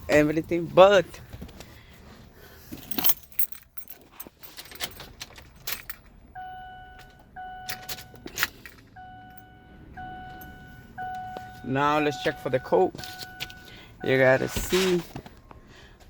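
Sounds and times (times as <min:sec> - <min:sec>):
keys jangling: 0:02.7 - 0:06.1
truck warning chime: 0:06.3 - 0:15.1.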